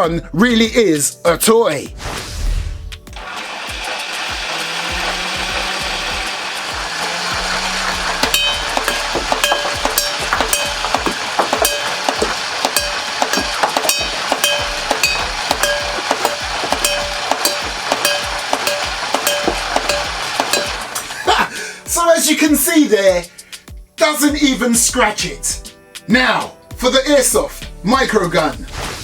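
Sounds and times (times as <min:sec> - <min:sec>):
sharp ticks: 0:07.9 - 0:21.2.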